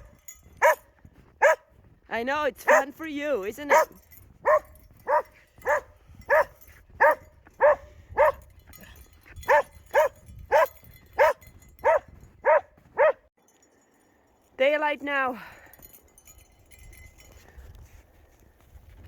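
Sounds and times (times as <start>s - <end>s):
dog barking: 0.0s - 1.7s, 2.6s - 3.0s, 3.7s - 8.4s, 9.5s - 13.3s.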